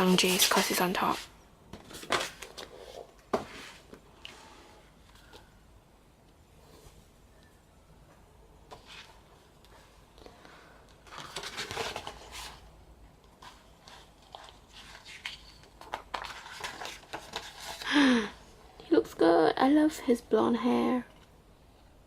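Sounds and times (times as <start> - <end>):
pages rustling: 0.0 - 4.0, 11.0 - 12.7, 13.3 - 17.9.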